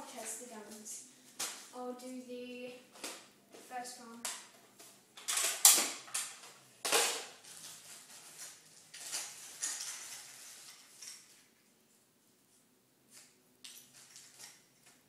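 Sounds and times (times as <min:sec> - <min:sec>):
plastic rattles: 0:05.2 - 0:11.4.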